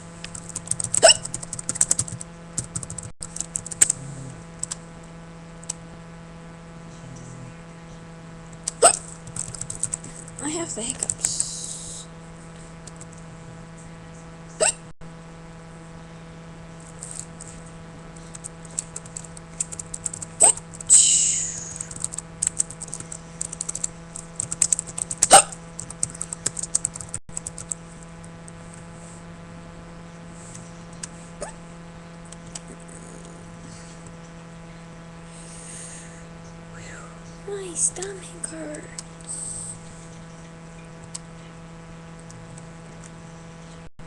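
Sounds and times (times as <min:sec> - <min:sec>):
keyboard typing: 0:00.2 - 0:04.0, 0:04.6 - 0:04.8, 0:08.6 - 0:10.3, 0:18.2 - 0:20.9, 0:21.7 - 0:27.8
person hiccupping: 0:08.7 - 0:09.0, 0:14.6 - 0:14.9, 0:25.2 - 0:25.6.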